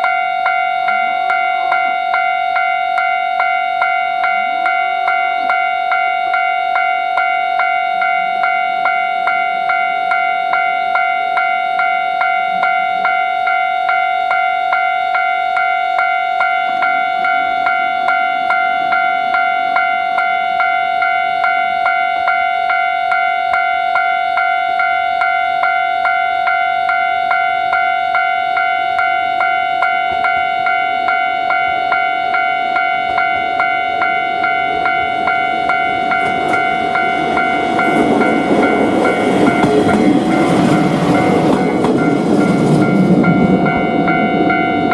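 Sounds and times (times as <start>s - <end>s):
level crossing bell ringing: 0.0s - 44.9s
low train rumble: 25.6s - 44.9s.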